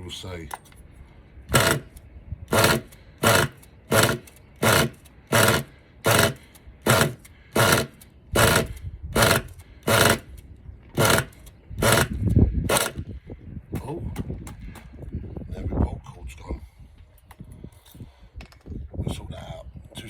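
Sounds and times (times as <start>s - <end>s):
recoil starter yanks whirring: 1.5s - 13.0s.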